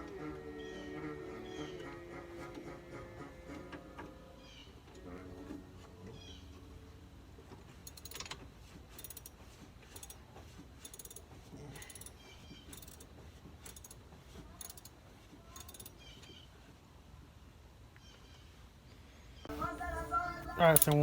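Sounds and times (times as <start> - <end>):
socket ratchet clicking: 10.9 - 11.2, 15.6 - 15.9, 20.4 - 21.0.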